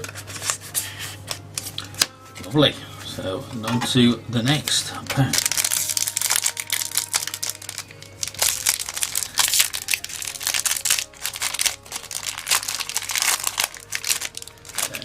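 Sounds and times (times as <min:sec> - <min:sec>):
plastic foil pack crinkling: 0:05.0 - 0:15.0.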